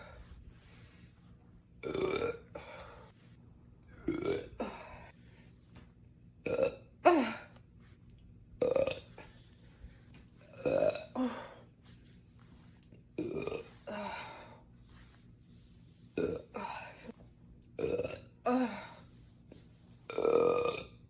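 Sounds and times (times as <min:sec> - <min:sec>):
woman burping: 0:01.8 - 0:02.6, 0:04.0 - 0:05.1, 0:06.4 - 0:07.5, 0:10.5 - 0:11.4, 0:13.2 - 0:13.7, 0:17.8 - 0:18.8.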